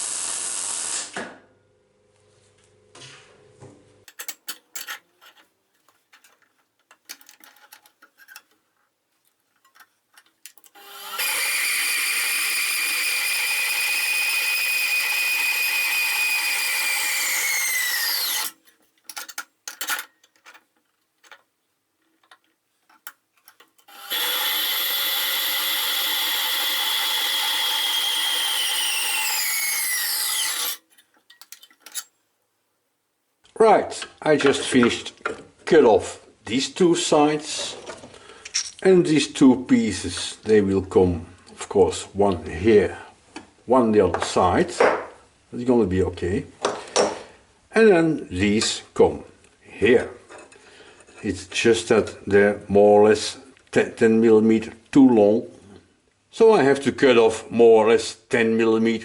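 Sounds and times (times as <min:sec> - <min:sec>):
handling clicks and knocks: 0:04.1 - 0:10.8, 0:18.6 - 0:23.9, 0:30.9 - 0:32.1
power tool cutting steel: 0:10.6 - 0:18.6, 0:23.8 - 0:32.1
motor spinning down: 0:10.8 - 0:18.6, 0:23.9 - 0:30.8.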